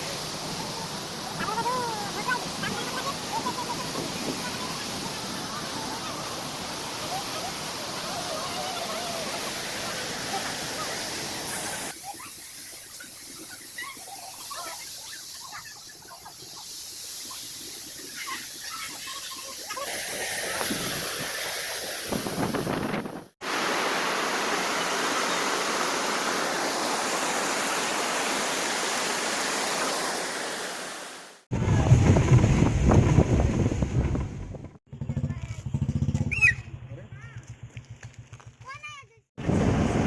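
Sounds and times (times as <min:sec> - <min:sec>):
waterfall rushing: 0:00.0 - 0:12.1, 0:18.0 - 0:31.8
small bird chirps: 0:36.2 - 0:36.7.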